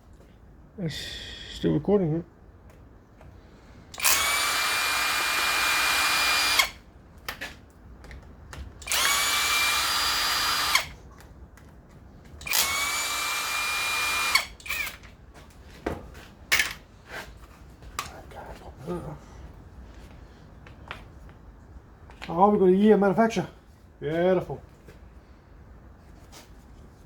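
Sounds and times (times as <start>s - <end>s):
power drill whine: 3.9s - 6.8s, 8.8s - 11.0s, 12.4s - 15.0s.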